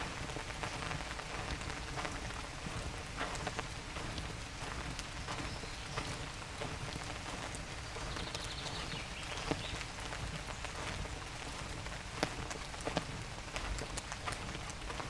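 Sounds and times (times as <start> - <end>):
rain patter: 0.0 - 15.0
raindrops tapping: 0.0 - 15.0
bird chirping: 8.0 - 9.8.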